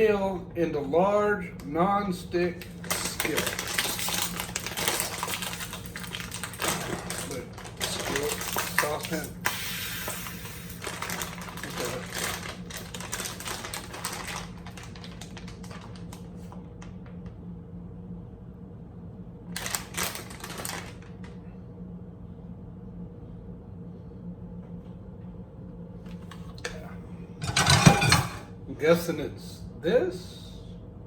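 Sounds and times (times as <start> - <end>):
steady low hum: 0.0 - 31.0
cookware clatter: 27.4 - 28.5
cookware clicking and rattling: 27.4 - 28.5.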